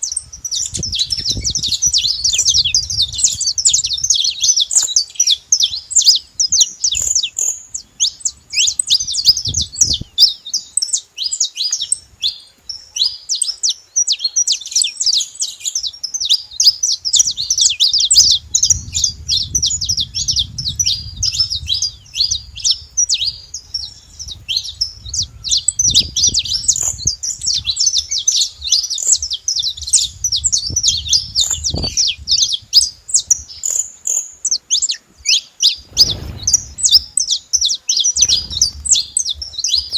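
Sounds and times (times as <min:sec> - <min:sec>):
finch singing: 0:00.0 - 0:39.9
soft low rumble: 0:18.1 - 0:26.5, 0:35.8 - 0:37.2, 0:38.2 - 0:39.8.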